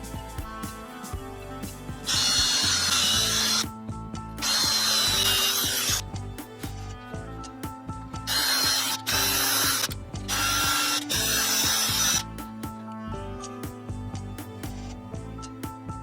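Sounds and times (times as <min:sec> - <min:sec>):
music with steady beat: 0:00.0 - 0:16.0
power tool bursts: 0:02.1 - 0:03.7, 0:04.4 - 0:06.0, 0:08.3 - 0:12.2.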